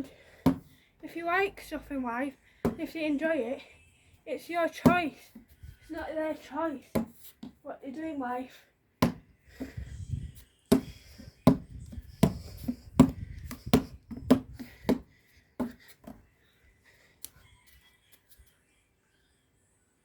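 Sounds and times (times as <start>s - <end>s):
basketball dribbling: 10.7s - 15.8s.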